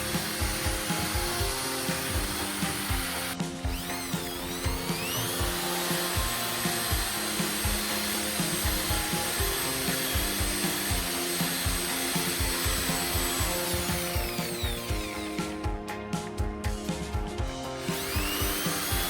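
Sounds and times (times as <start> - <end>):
electric drill motor whine: 0.0 - 15.9, 16.6 - 19.0.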